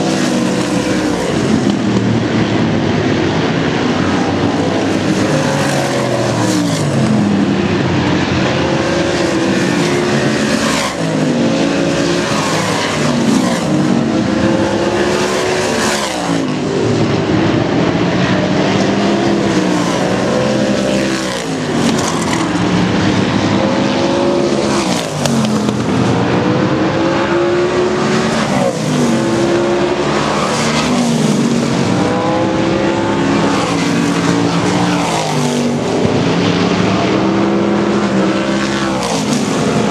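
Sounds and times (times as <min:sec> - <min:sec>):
race cars passing by: 0:00.0 - 0:39.9.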